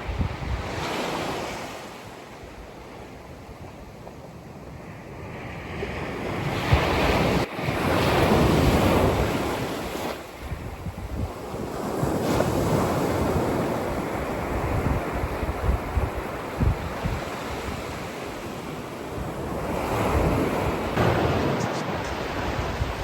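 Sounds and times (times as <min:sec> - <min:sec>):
wind buffeting microphone: 0:00.0 - 0:00.9, 0:02.4 - 0:23.0
sea waves washing in: 0:11.4 - 0:23.0.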